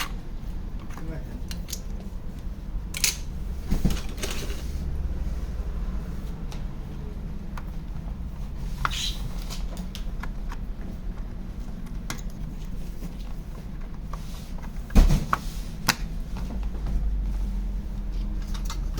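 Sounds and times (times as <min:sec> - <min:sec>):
steady low hum: 0:00.0 - 0:18.9
clicks of hard parts handled: 0:02.9 - 0:03.3.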